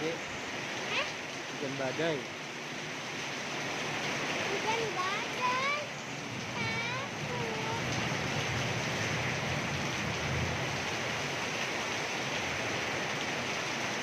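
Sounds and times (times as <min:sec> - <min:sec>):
heavy rain pouring: 0:00.0 - 0:14.0
strong wind: 0:03.0 - 0:14.0.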